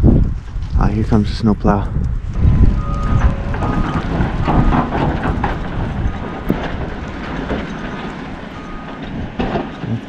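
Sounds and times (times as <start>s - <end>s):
truck engine rumble: 0.0s - 10.0s
back-up alarm beeping: 2.7s - 4.9s, 7.7s - 9.1s.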